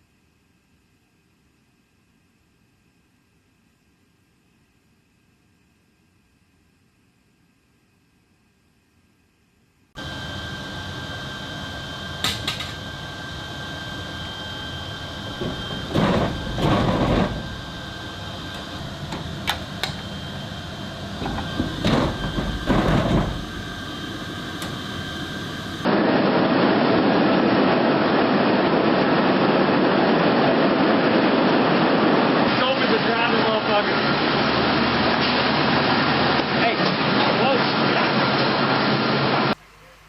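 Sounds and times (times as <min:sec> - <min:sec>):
jet aircraft whine: 0:09.9 - 0:40.0
dull steady rush: 0:10.0 - 0:40.0
metallic clanks and thuds: 0:15.3 - 0:17.7, 0:21.2 - 0:23.7.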